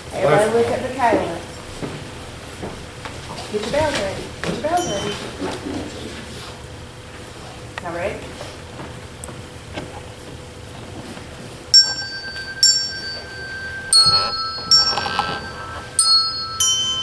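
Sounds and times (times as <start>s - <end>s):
handbells ringing a tune: 4.7s - 5.7s, 11.7s - 17.0s.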